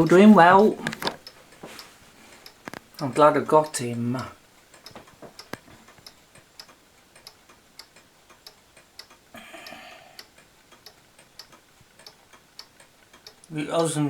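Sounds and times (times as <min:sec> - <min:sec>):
soft hiss: 0:00.0 - 0:14.0
wall clock ticking: 0:00.0 - 0:14.0.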